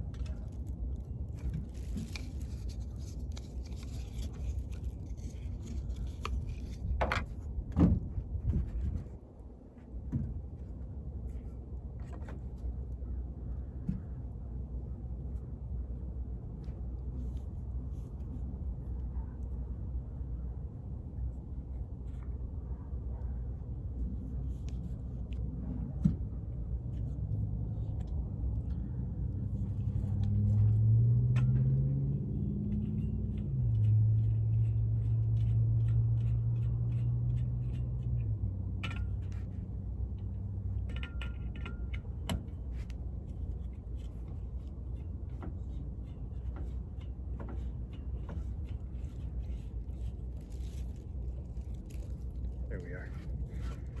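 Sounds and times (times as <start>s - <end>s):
small clicks and clatter: 0.0s - 7.4s
vehicle engine hum: 9.8s - 54.0s.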